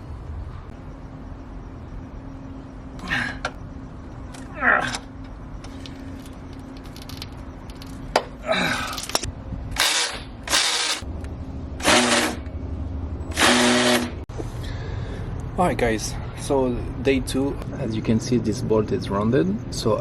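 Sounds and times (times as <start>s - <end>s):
power drill bursts: 9.8s - 11.0s, 11.8s - 12.4s, 13.3s - 14.2s.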